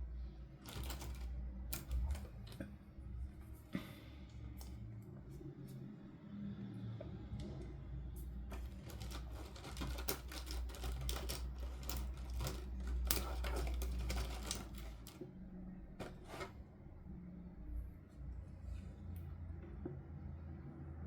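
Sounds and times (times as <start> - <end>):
plastic toy pieces clicking: 8.5 - 15.2.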